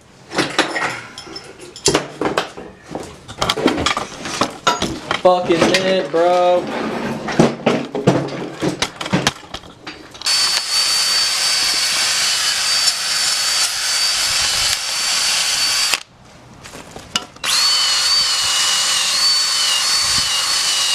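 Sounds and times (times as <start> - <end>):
power tool whining: 10.2 - 16.1, 17.4 - 20.9.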